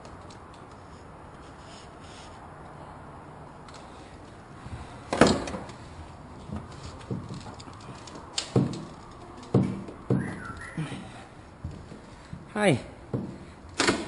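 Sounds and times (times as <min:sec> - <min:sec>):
irregular knocks and clunks: 0:06.4 - 0:10.6, 0:13.1 - 0:14.0.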